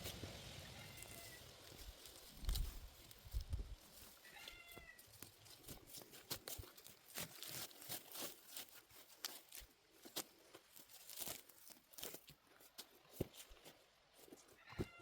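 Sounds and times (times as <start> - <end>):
weeds pulled from soil: 0.0 - 13.5
cat meowing: 4.2 - 5.0.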